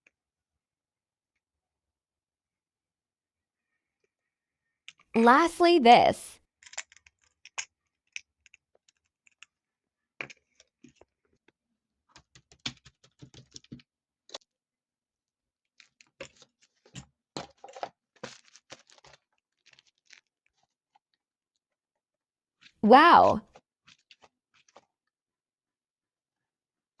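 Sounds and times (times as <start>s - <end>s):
plastic toys clicking and tapping: 6.6s - 9.5s, 12.1s - 13.9s.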